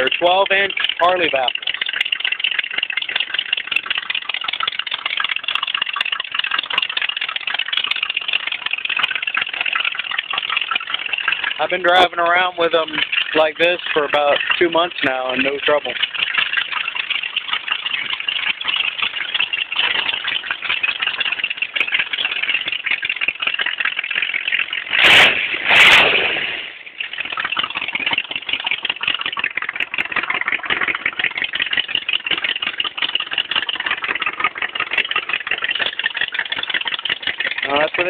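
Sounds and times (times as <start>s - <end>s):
car engine idling: 0.0s - 38.0s
engine revving: 24.8s - 26.8s.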